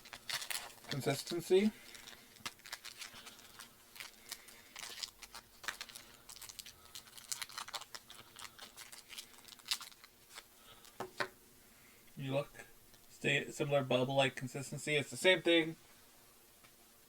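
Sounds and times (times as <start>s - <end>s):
wrapper crackling: 0.0s - 11.0s.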